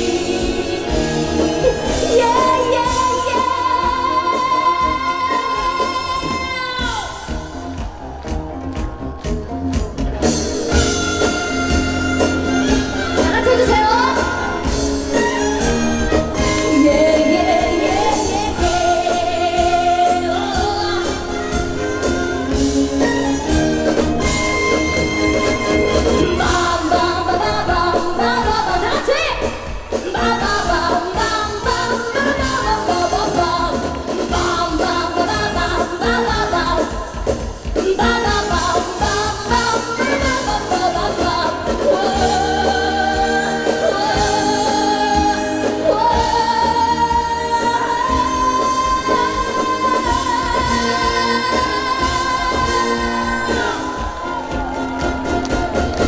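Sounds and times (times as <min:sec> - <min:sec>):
woman singing: 0:00.0 - 0:08.4, 0:10.3 - 0:56.0
band playing steady beat: 0:00.0 - 0:56.0.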